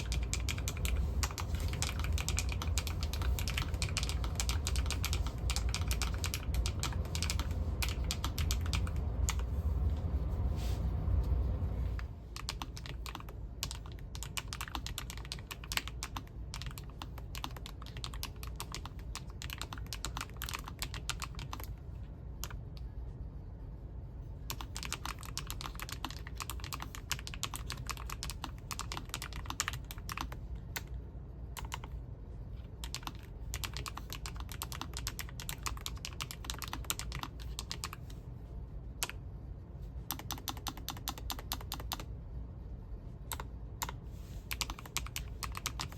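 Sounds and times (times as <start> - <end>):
mechanical keyboard typing: 0.0 - 9.5, 12.3 - 21.8, 24.5 - 30.9, 31.6 - 32.0, 32.8 - 38.1, 40.1 - 42.1, 43.3 - 45.9
low hum: 0.0 - 14.2.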